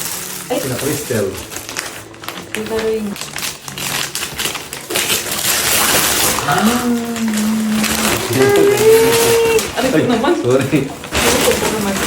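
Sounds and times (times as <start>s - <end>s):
gift packaging rustling: 0.0s - 12.0s
person saying ooh: 6.4s - 9.7s.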